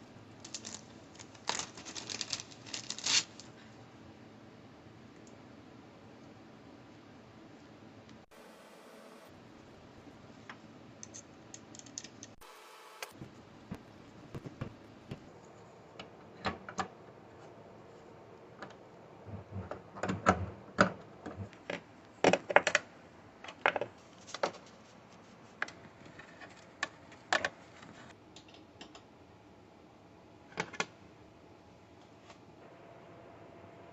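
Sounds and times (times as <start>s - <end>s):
clicks and knocks of handled parts: 10.4s - 12.4s.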